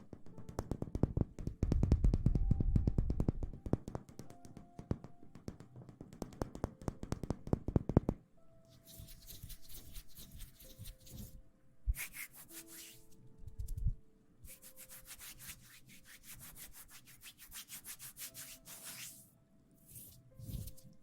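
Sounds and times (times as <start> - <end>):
scratchy rubbing strokes: 8.7 - 13.2, 14.5 - 19.3, 19.9 - 21.0.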